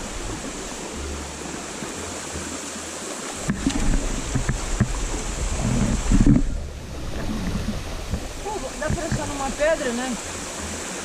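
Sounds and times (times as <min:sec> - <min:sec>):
stream water rushing: 0:00.0 - 0:11.0
low rumble: 0:03.4 - 0:09.7.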